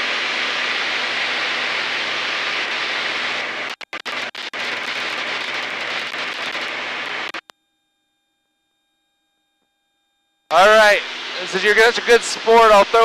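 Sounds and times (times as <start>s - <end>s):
plane engine drone: 0.0s - 7.3s, 10.5s - 13.0s.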